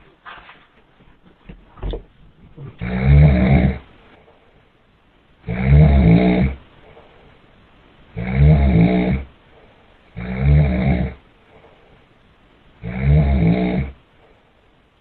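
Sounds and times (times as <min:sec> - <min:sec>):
person snoring loudly: 0:02.8 - 0:03.8, 0:05.4 - 0:06.6, 0:08.2 - 0:09.3, 0:10.2 - 0:11.2, 0:12.8 - 0:14.0.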